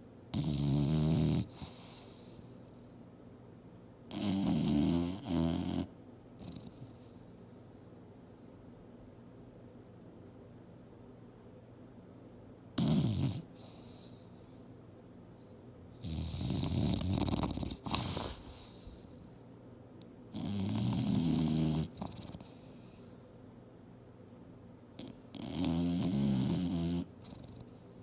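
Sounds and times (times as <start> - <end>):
dog snoring: 0.3 - 3.0, 4.1 - 7.4, 12.8 - 14.7, 15.4 - 19.5, 20.3 - 23.2, 25.0 - 28.0.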